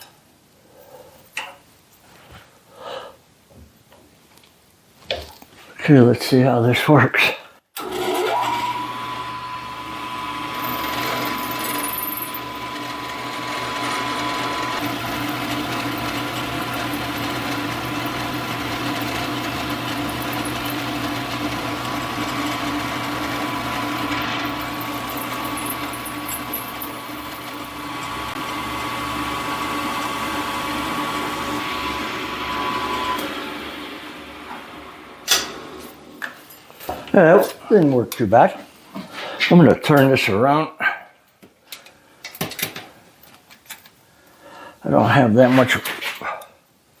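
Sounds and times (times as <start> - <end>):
milling machine cutting whine: 7.8 - 35.4.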